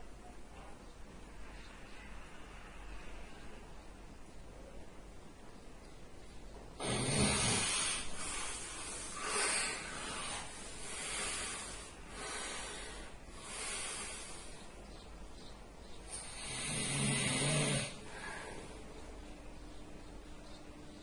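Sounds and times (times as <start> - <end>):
man snoring: 6.8 - 14.3, 16.1 - 18.2.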